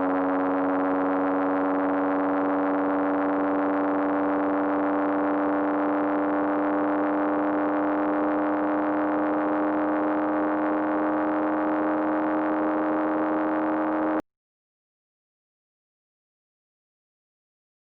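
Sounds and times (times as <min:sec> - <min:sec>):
racing car engine at high revs: 0:00.0 - 0:14.2.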